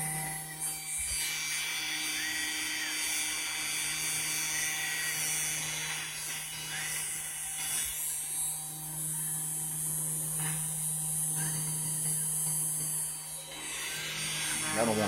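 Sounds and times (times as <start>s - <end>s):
steady electrical hum: 0.0s - 15.0s.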